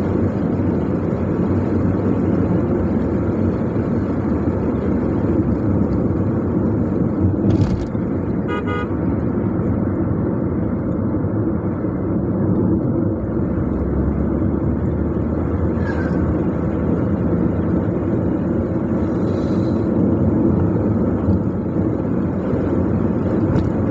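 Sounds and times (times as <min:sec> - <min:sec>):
car engine and tyres rumbling: 0:00.0 - 0:23.9
car horn short toots: 0:08.4 - 0:09.0.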